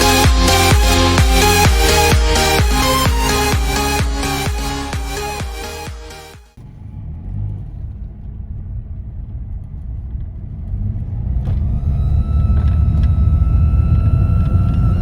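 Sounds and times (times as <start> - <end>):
car engine low rumble: 6.6 - 15.0.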